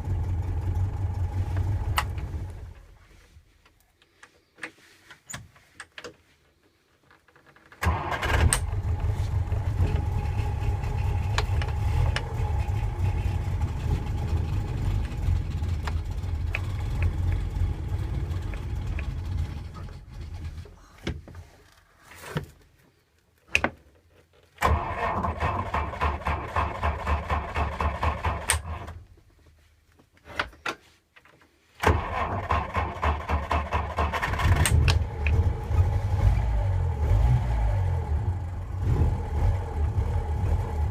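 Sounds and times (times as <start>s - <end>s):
engine cranking with starter whine: 7.8s - 20.8s, 24.6s - 29.0s, 31.8s - 38.3s.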